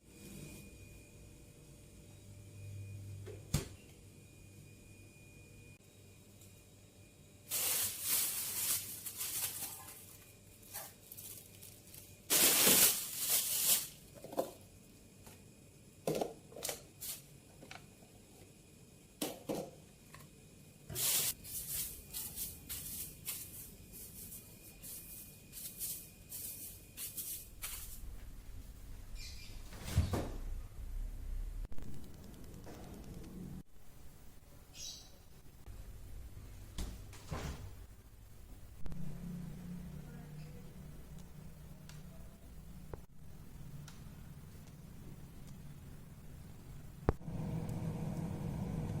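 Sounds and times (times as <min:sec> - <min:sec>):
household things being handled: 0:07.5 - 0:14.6, 0:20.9 - 0:28.6.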